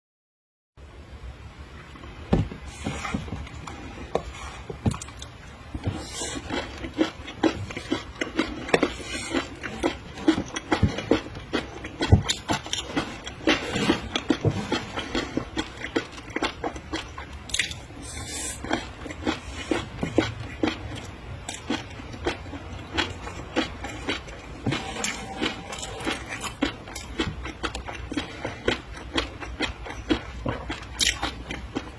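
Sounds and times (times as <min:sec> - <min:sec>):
wet biting and chewing: 0:02.3 - 0:31.9.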